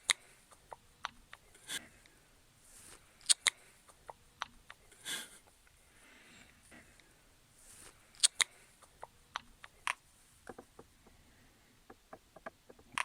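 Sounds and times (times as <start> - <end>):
sharp clicks and light taps: 0.0 - 1.4, 3.2 - 4.8, 8.2 - 11.2, 11.9 - 13.0.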